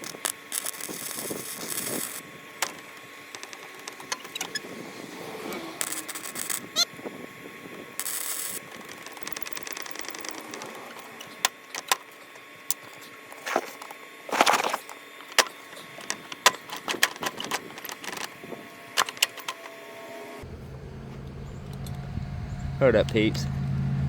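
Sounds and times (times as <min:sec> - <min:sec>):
welding arc crackling: 0:00.0 - 0:04.6, 0:05.8 - 0:06.9, 0:07.9 - 0:10.6
steady low hum: 0:20.3 - 0:24.0.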